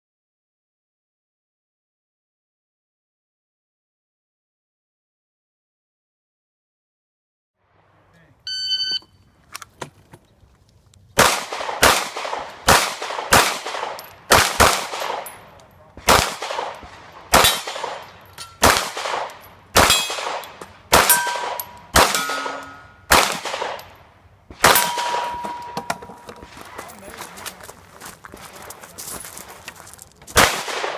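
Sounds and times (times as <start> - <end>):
pistol shots: 11.2 - 26.0, 30.3 - 30.9.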